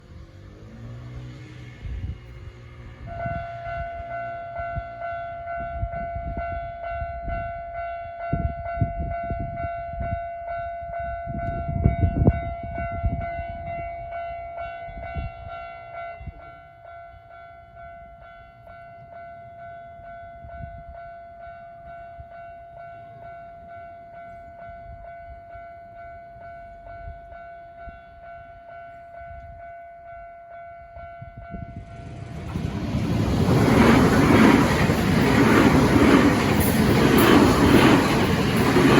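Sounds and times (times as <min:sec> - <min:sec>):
electric train rumbling past: 0:00.0 - 0:07.4, 0:30.8 - 0:38.9
level crossing warning bell: 0:25.2 - 0:38.9
train wheel clacks: 0:31.7 - 0:38.9.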